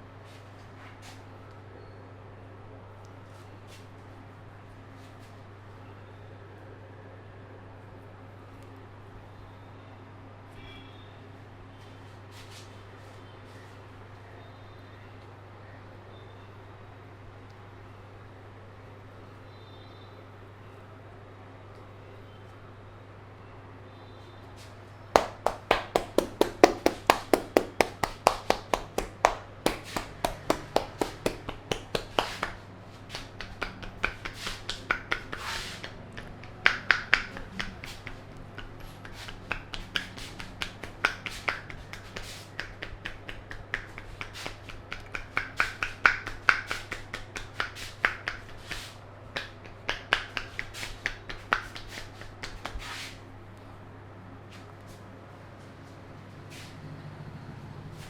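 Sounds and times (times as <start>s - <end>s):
hands slapping and tapping on head: 25.2s - 53.2s.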